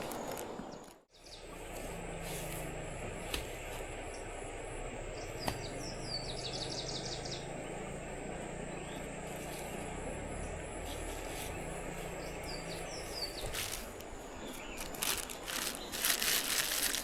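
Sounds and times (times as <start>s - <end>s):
low steady hum: 0.0s - 17.0s
small bird chirping and trilling: 5.2s - 7.7s, 11.4s - 16.6s.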